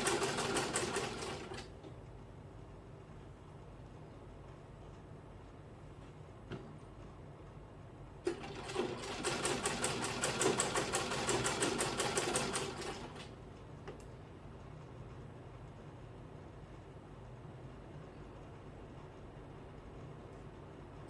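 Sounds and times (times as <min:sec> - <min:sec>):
sewing machine stitching: 0:00.0 - 0:01.7, 0:08.2 - 0:13.3.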